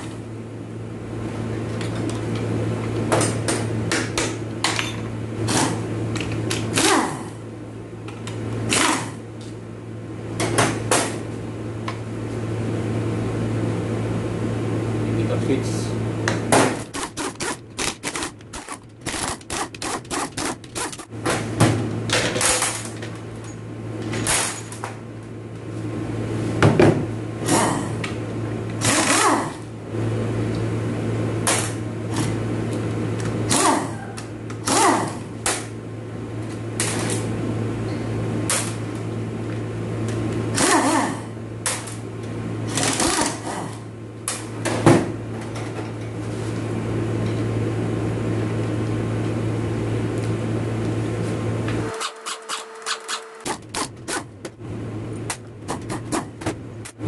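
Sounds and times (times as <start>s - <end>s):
steady low hum: 0.0s - 57.0s
short bursts of tool noise: 16.9s - 21.0s, 51.8s - 54.2s
ratchet clicking: 52.0s - 53.6s.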